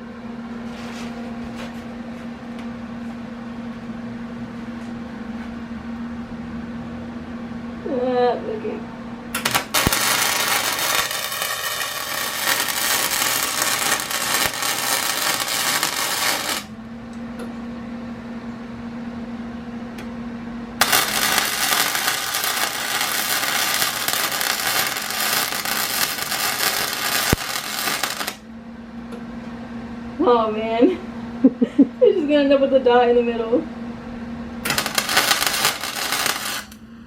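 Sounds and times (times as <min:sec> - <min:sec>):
steady low hum: 0:00.0 - 0:37.0
welder arc crackling: 0:09.3 - 0:16.8, 0:20.8 - 0:28.4, 0:34.6 - 0:36.8.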